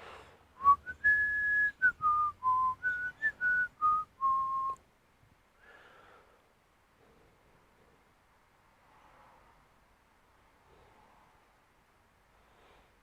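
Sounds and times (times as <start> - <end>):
person whistling a tune: 0.6 - 4.8.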